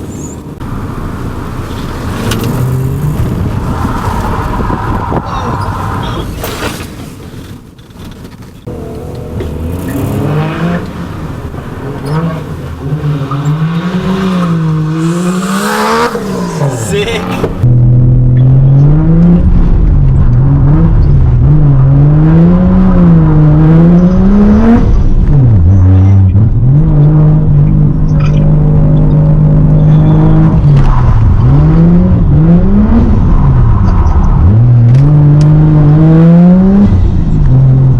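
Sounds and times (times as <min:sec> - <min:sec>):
car engine revving: 0:08.6 - 0:37.9.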